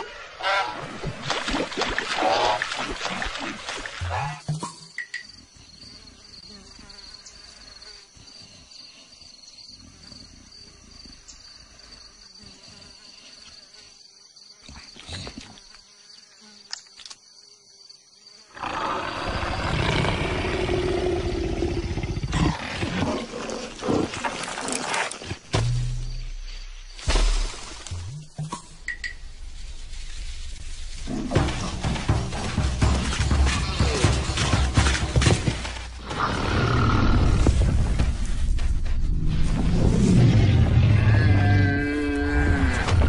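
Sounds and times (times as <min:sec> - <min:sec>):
loud animal roar: 0:18.6 - 0:24.2, 0:40.1 - 0:43.0.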